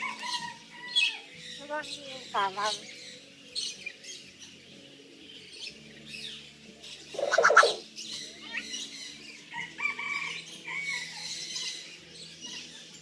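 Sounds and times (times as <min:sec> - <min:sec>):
harsh bird call: 0:07.2 - 0:07.8
short whistled bird notes: 0:07.2 - 0:07.8.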